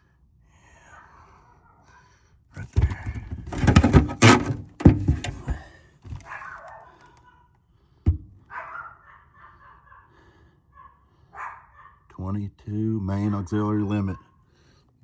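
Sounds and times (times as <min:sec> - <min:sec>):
sheet metal panels thunking: 0:02.8 - 0:06.2.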